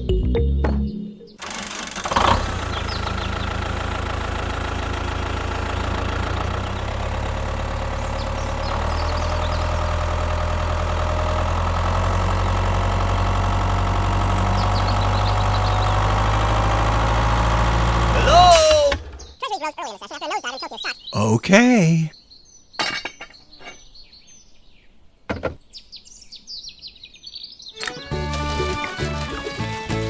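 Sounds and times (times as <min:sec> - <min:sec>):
small engine humming: 0:01.4 - 0:19.3.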